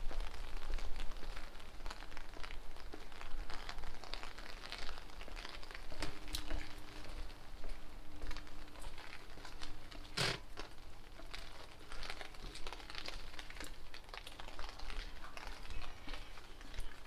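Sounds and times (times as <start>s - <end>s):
raindrops ticking: 0.0s - 17.0s.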